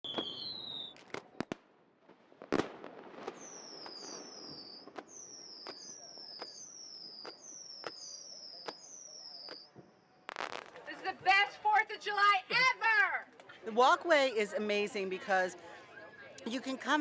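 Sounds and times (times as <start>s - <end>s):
firework launches whistling: 0.0s - 1.2s, 2.5s - 10.7s
firework pops and bang: 0.0s - 11.9s.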